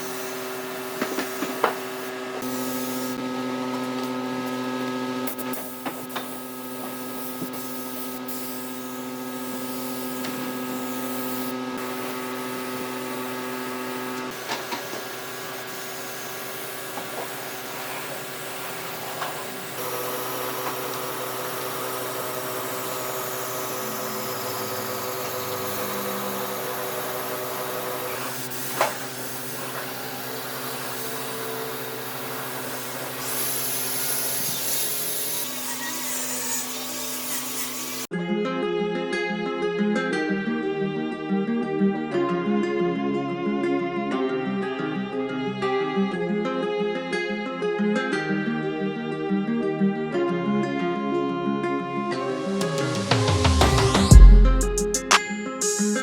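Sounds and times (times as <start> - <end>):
power tool motor humming: 0.0 - 38.1.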